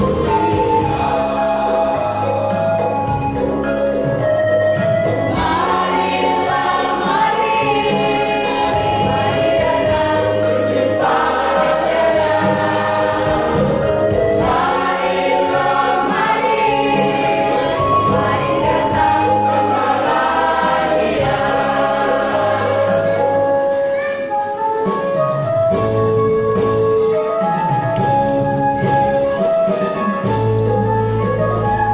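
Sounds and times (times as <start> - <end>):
choir singing a hymn: 0.0 - 3.5, 5.0 - 23.5
instrumental accompaniment: 0.0 - 31.9.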